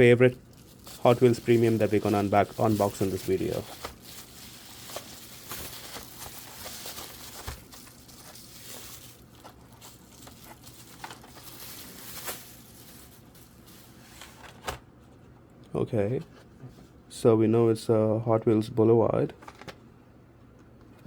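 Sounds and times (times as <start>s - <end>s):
packaging rustling and crinkling: 0.0s - 14.8s.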